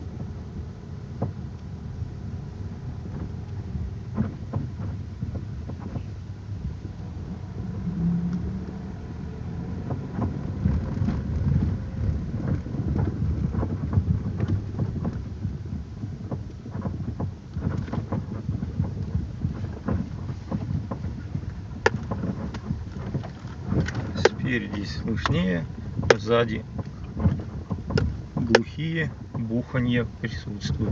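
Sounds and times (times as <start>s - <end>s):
road and tyre rumble: 0.0s - 30.9s
suspension creaks and knocks: 0.0s - 30.9s.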